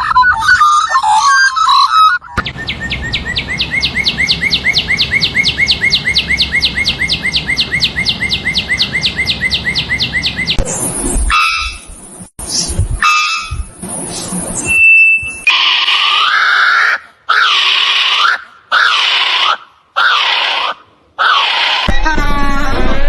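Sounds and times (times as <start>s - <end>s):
downward-sweeping chirps: 0.0s - 15.5s.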